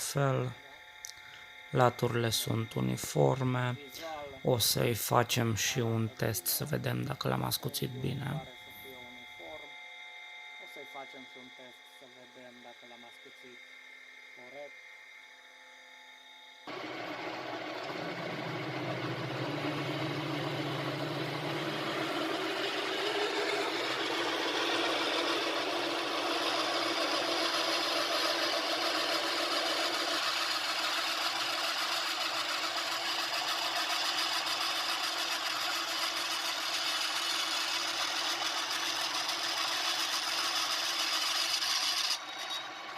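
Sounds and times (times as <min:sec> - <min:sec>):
drill bit cutting: 0:16.7 - 0:42.9
electric drill running: 0:16.7 - 0:42.9.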